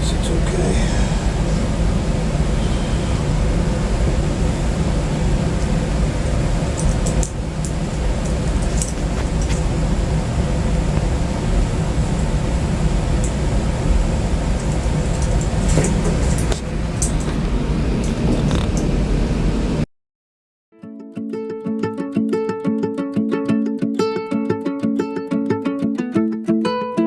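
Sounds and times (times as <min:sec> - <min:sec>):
steady low rumbling: 0:00.0 - 0:19.8.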